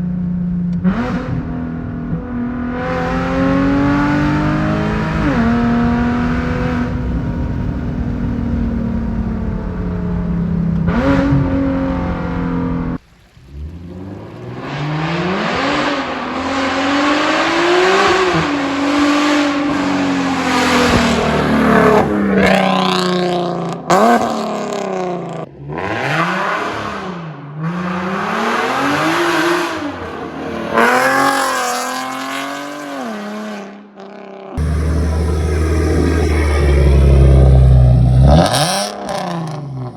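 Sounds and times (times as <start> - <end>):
car engine accelerating hard: 0.8 - 33.6, 34.6 - 39.9
deep low engine rumble: 5.4 - 10.9, 34.6 - 38.7.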